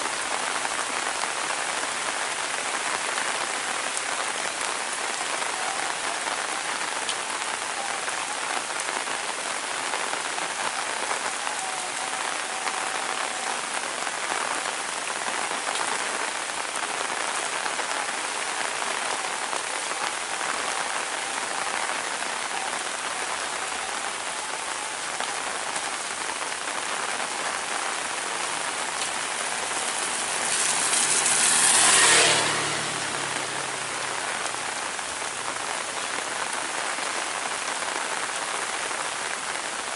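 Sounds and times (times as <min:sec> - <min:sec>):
heavy rain falling: 0:00.0 - 0:39.9
vehicle passing: 0:28.1 - 0:35.4.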